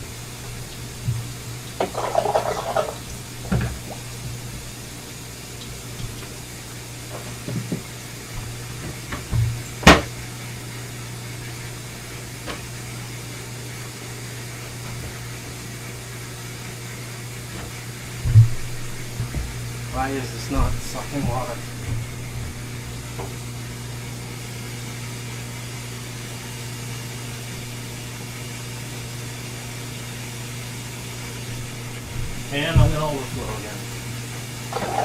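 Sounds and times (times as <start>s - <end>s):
pump humming: 0.0s - 35.0s
water splashing and gurgling: 0.3s - 10.1s
knocks on plumbing: 7.4s - 10.2s, 20.4s - 22.6s, 32.7s - 33.1s.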